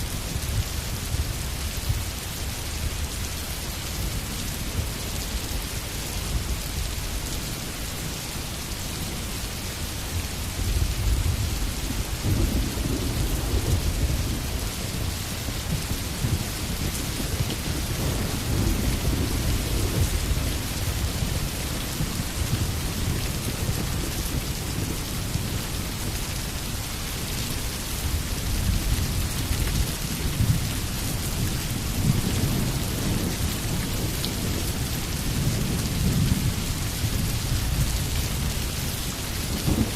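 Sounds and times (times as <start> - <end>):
steady rain: 0.0 - 39.9
rolling thunder: 10.6 - 25.5, 39.5 - 39.9.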